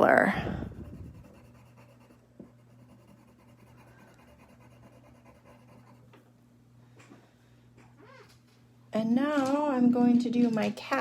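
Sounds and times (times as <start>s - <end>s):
low electrical hum: 0.0s - 11.0s
colouring scratching on paper: 0.7s - 6.1s.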